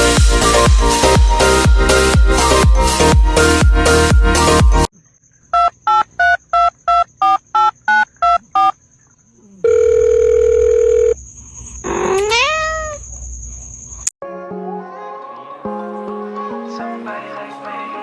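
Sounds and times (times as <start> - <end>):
keypad dialing beeps: 5.6 - 8.7
steady phone tone: 9.6 - 11.2.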